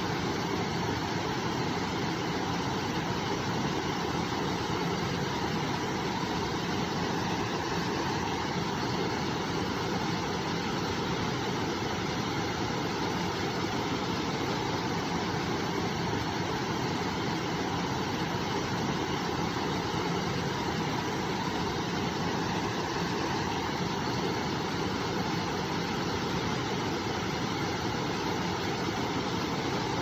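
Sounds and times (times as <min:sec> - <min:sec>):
river water flowing: 0:00.0 - 0:30.0.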